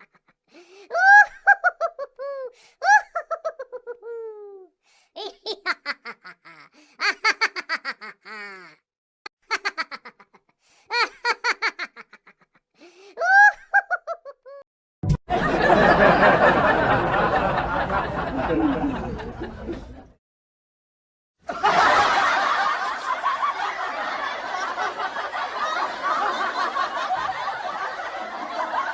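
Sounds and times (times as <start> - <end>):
crowd laughing: 0.0 - 4.6, 5.5 - 8.8, 9.5 - 12.6, 13.2 - 14.6, 15.2 - 20.2, 21.4 - 28.9
person laughing: 0.0 - 8.8, 13.2 - 14.6, 18.2 - 20.1.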